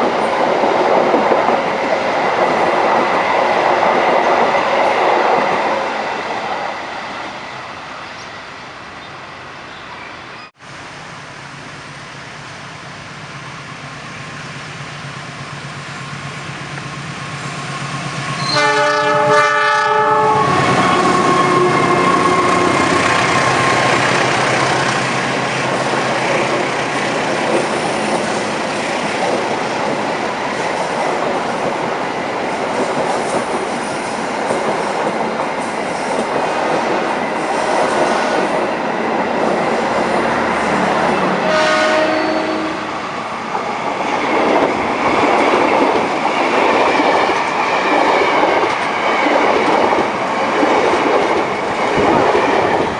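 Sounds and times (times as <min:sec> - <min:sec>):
train wheels rushing and clattering: 0:00.0 - 0:07.1, 0:20.4 - 0:42.0, 0:43.0 - 0:52.9
train horn: 0:18.3 - 0:23.7, 0:41.1 - 0:43.0.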